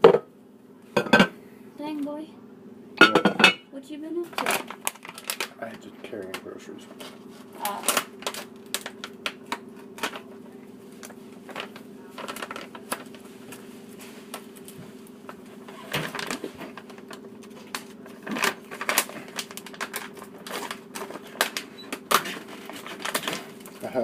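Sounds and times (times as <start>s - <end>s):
steady low hum: 0.0s - 24.0s
utensils and dishes clinking: 1.0s - 1.3s, 3.0s - 3.6s.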